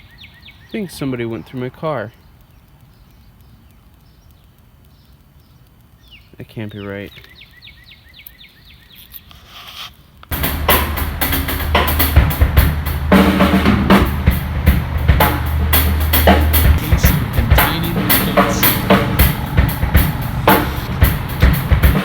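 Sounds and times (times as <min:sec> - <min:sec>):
bass line: 0:10.3 - 0:22.0
music with drum kit: 0:10.3 - 0:22.0.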